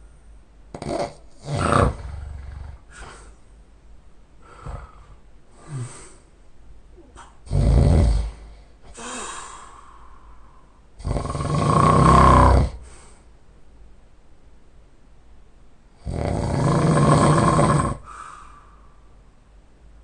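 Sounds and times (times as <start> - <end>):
man snoring loudly: 0.8 - 3.2, 7.5 - 9.2, 11.0 - 12.8, 16.0 - 18.1.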